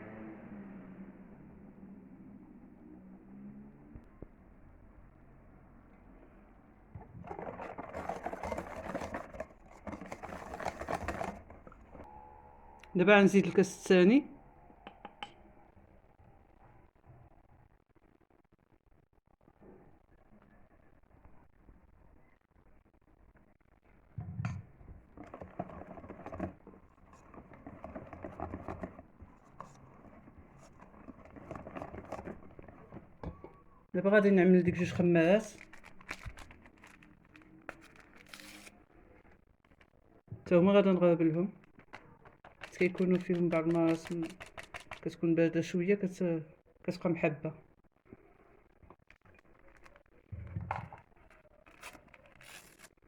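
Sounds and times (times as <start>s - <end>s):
hand whisk beating batter: 7.2s - 12.0s, 25.1s - 33.2s, 41.7s - 45.3s
utensil clicking and scraping bowl: 7.2s - 12.0s, 25.1s - 33.1s, 35.0s - 38.7s, 41.6s - 45.2s, 51.0s - 53.0s.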